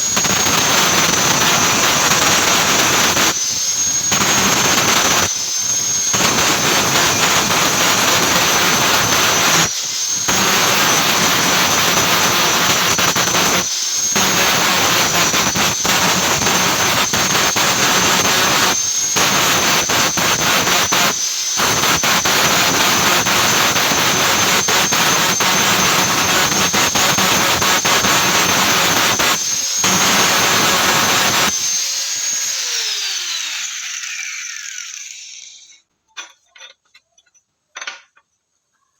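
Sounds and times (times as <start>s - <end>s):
angle grinder grinding steel: 0.0s - 35.8s.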